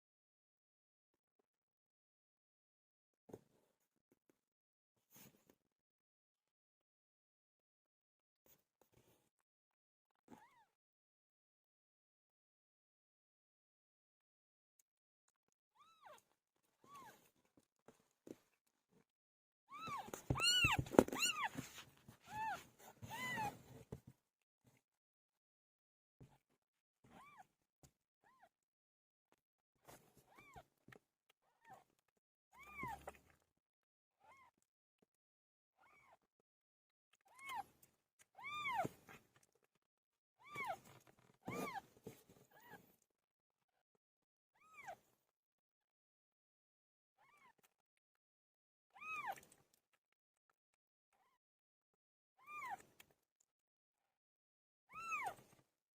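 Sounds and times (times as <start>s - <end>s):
cat meowing: 19.7s - 21.5s, 22.3s - 23.6s.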